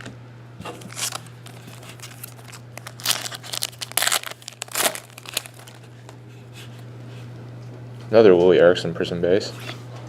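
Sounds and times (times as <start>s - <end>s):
foil wrapper crinkling: 0.6s - 5.9s.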